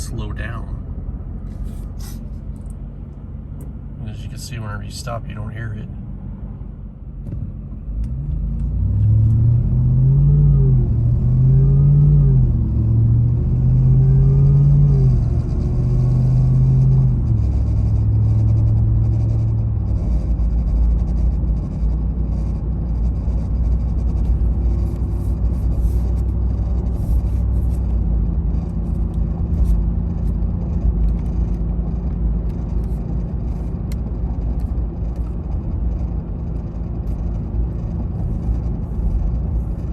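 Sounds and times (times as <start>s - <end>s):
road rumble: 0.0s - 39.9s
truck engine accelerating through gears: 5.9s - 39.9s
vibration noise: 14.1s - 39.9s.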